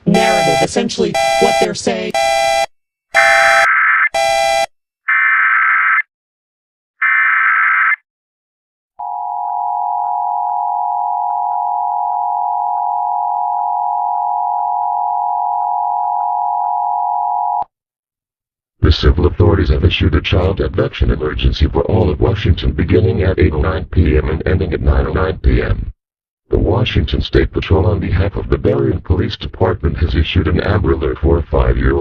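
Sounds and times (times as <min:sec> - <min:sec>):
two-tone alert signal: 0:00.1 - 0:04.7.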